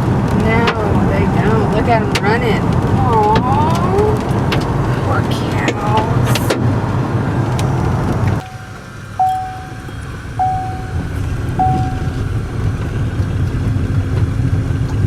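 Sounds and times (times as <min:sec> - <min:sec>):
low vehicle rumble: 0:00.0 - 0:15.0
short electronic beeps: 0:08.4 - 0:12.3.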